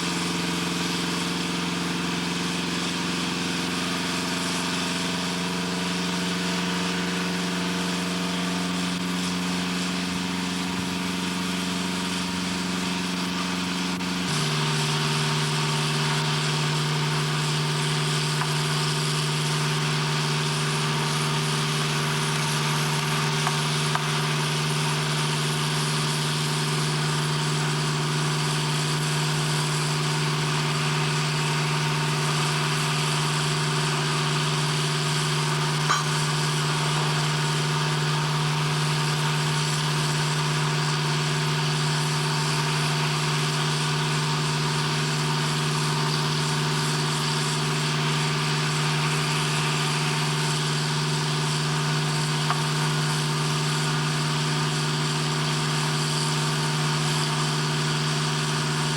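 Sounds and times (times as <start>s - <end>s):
machinery drone: 6.8s - 28.0s, 28.7s - 44.6s.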